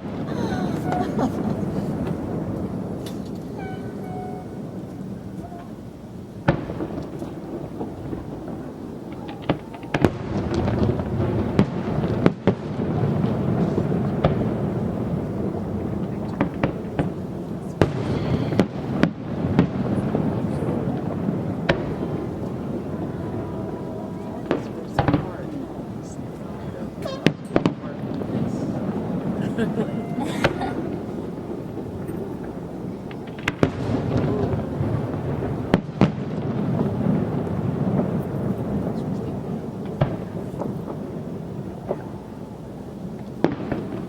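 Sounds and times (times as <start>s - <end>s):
fireworks bangs: 0.0s - 44.0s
steady background noise: 0.0s - 44.0s.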